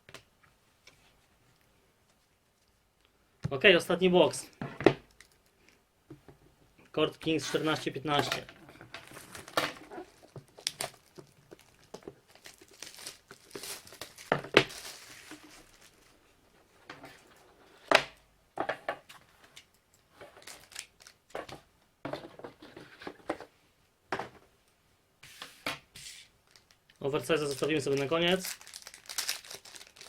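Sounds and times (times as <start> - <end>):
plastic wrap crinkling and tearing: 9.0 - 16.2, 20.3 - 21.3, 26.4 - 30.0.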